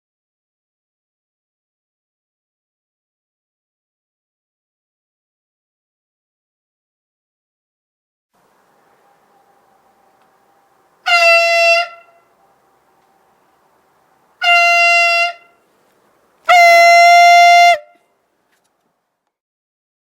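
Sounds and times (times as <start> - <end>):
compressed-air horn blasts: 8.7 - 12.4, 14.4 - 15.6, 16.4 - 18.1.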